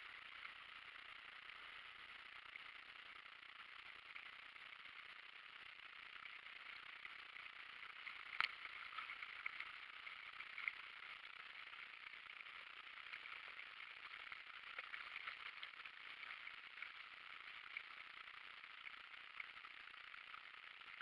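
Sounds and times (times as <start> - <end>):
small water splashes: 6.3 - 19.5.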